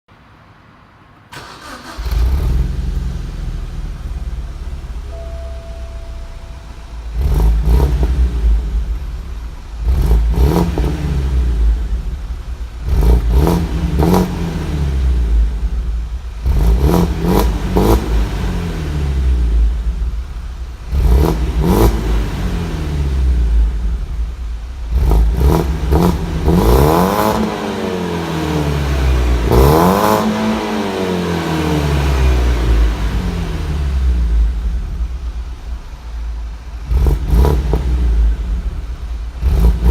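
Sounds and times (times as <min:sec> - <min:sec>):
car engine revving: 0:01.4 - 0:39.9.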